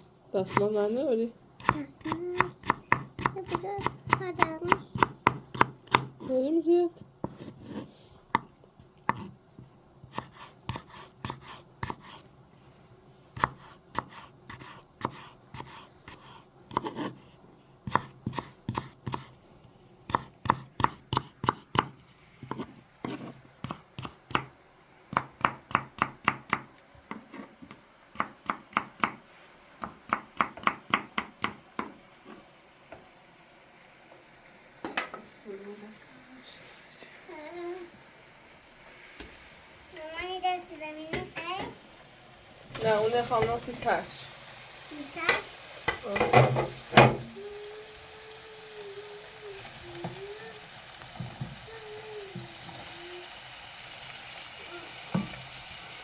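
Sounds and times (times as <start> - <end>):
knife chopping potatoes: 0.4 - 6.5, 7.2 - 8.5, 9.1 - 9.4, 10.0 - 12.2, 13.3 - 17.2, 17.8 - 19.4, 20.1 - 24.5, 25.1 - 29.2, 29.8 - 32.5.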